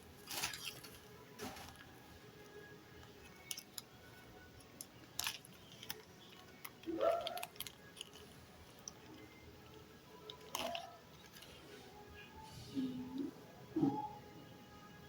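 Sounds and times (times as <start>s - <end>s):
package clicks taps and rustles: 4.7s - 9.2s.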